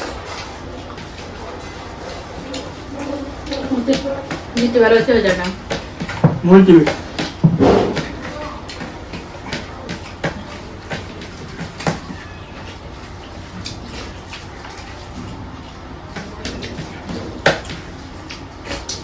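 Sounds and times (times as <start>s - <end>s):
dishes clicking and knocking: 3.5s - 12.2s.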